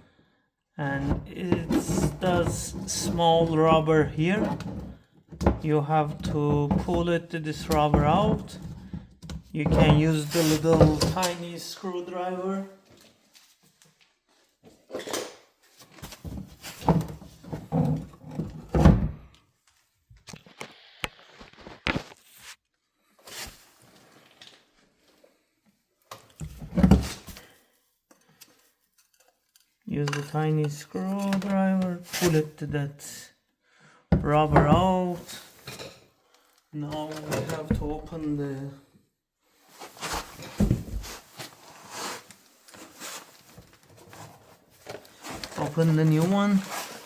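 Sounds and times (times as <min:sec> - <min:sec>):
packaging rustling: 0:46.5 - 0:47.0.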